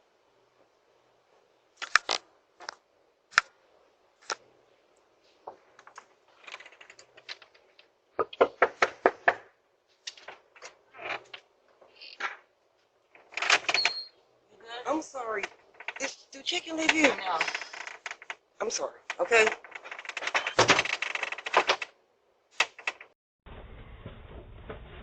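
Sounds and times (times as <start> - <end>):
sharp knocks and clicks: 5.5 - 11.4.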